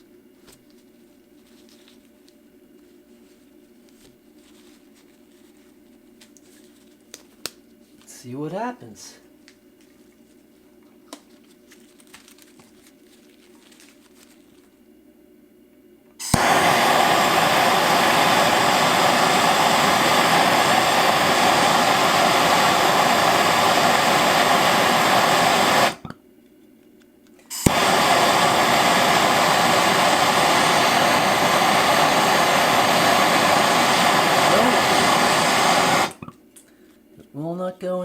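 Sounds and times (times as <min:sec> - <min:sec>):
torch flame hissing: 0:16.2 - 0:26.1, 0:27.5 - 0:36.3
torch igniter click: 0:16.2 - 0:26.2, 0:27.5 - 0:36.3.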